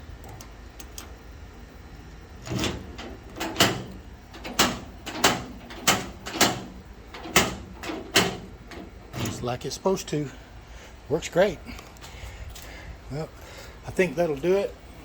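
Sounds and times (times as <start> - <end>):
door lock metallic clunks: 2.4 - 9.5.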